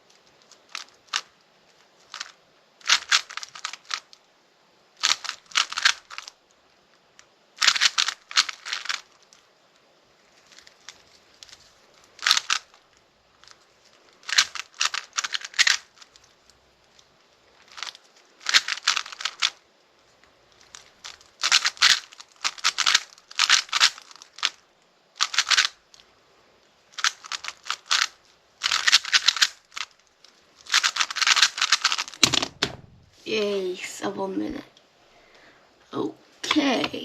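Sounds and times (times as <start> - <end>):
plastic puzzle cube clicking: 0.1 - 4.2, 5.0 - 6.4, 7.2 - 9.4, 10.5 - 12.8, 13.4 - 17.0, 17.6 - 19.6, 20.6 - 24.6, 25.2 - 26.0, 26.9 - 30.0, 30.6 - 32.9.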